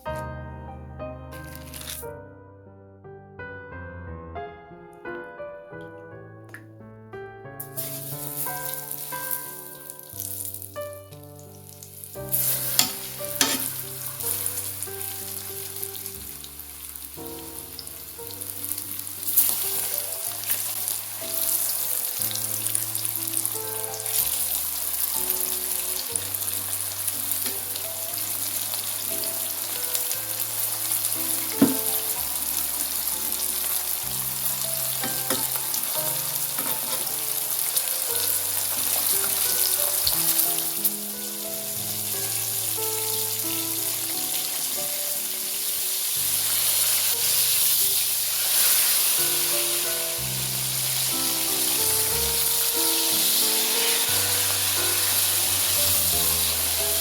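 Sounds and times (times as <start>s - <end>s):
piano music: 0.0s - 57.0s
meat sizzling in hot oil: 1.4s - 2.1s, 7.7s - 57.0s.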